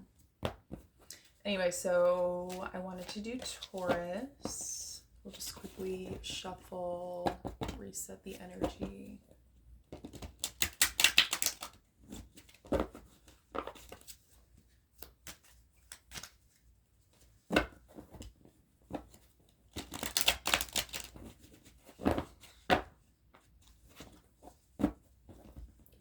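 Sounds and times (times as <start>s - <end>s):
cards riffling: 10.0s - 11.8s, 19.8s - 21.3s.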